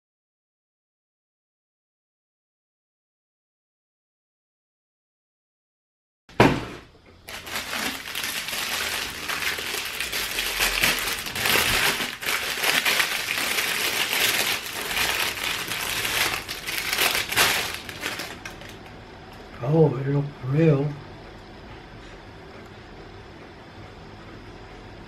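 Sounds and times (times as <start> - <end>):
packaging crinkling: 7.2 - 18.9.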